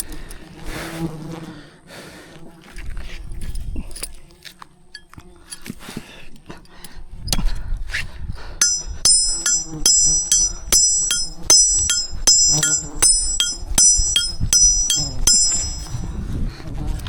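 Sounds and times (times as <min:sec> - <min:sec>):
hammer striking metal nail: 0:08.6 - 0:16.1.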